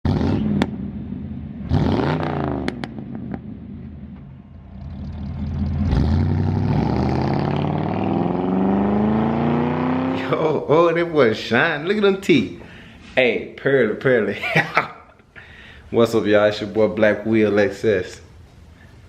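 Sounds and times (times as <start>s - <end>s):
car engine revving: 0.0s - 10.5s.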